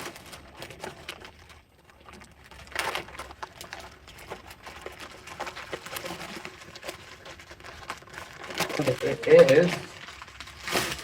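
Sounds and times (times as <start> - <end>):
packaging crinkling and rustling: 0.0 - 11.0.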